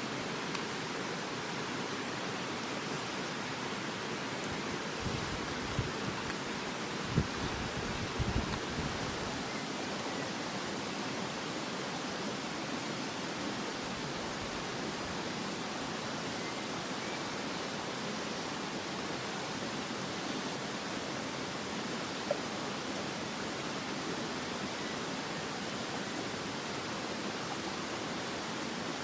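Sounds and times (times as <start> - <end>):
river water rushing: 0.0 - 29.0.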